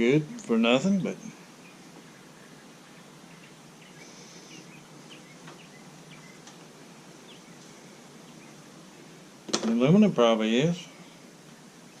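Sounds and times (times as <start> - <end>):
steady background hiss: 0.0 - 12.0
faint bird chirps: 0.1 - 9.2.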